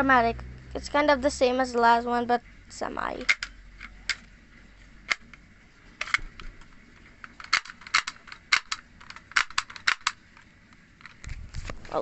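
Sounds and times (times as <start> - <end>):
toy pistol clicking: 7.3 - 10.2.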